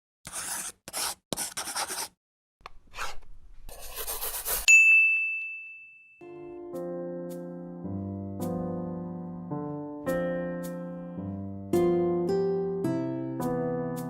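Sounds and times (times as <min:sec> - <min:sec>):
scratchy rubbing strokes: 0:00.3 - 0:02.2, 0:02.9 - 0:04.7
bell-like ding: 0:04.7 - 0:06.6.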